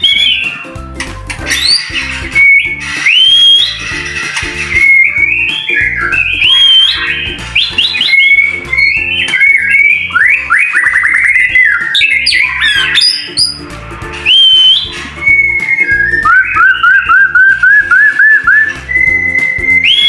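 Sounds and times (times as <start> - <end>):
bird singing whistles and trills: 0.0 - 0.8, 1.4 - 20.0.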